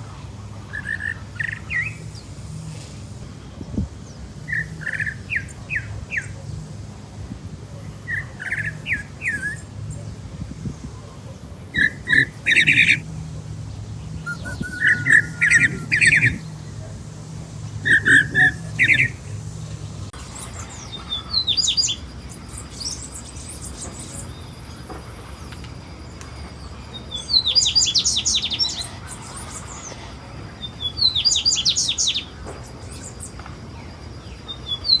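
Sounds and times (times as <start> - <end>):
songbird singing: 8.0 - 10.9, 11.6 - 20.1.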